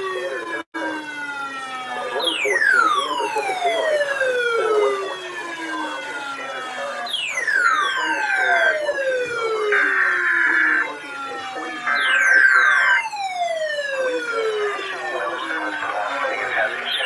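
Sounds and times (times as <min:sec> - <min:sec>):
siren-like gliding tone: 0:00.0 - 0:17.0
steady high beeps: 0:02.2 - 0:14.8.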